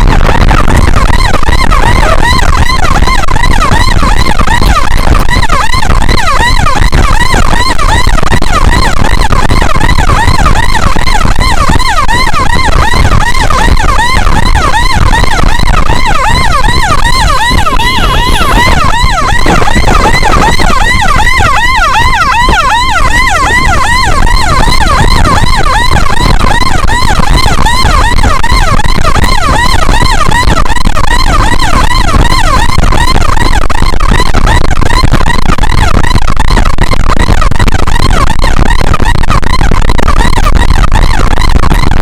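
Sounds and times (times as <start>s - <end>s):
electronic siren yelping: 0.0s - 42.0s.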